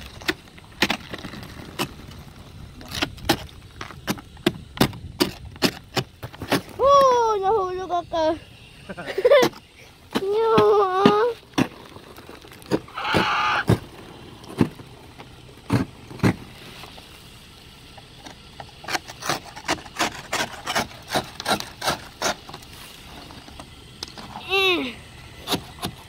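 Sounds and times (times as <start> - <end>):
ice scraper scraping ice: 0.0 - 7.6, 9.0 - 14.8, 18.6 - 23.6, 24.2 - 26.0.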